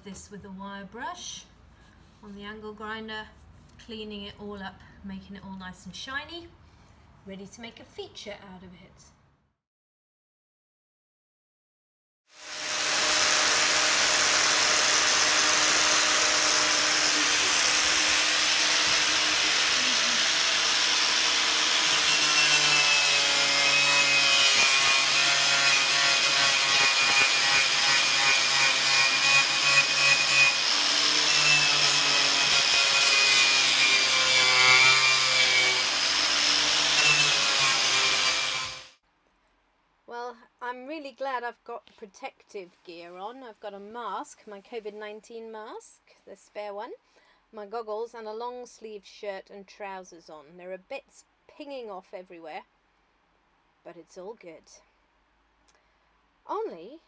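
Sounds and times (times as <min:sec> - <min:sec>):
angle grinder wire brush on wall: 0:12.3 - 0:39.0.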